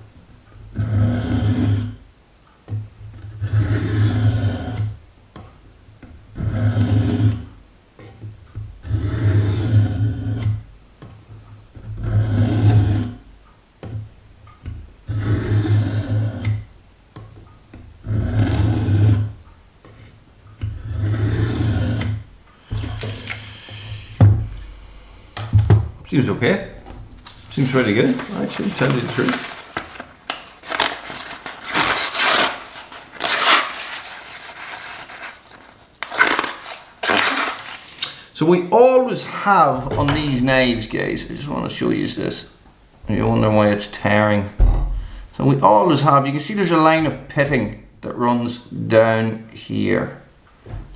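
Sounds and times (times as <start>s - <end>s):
knife slicing through paper: 27.2s - 38.3s.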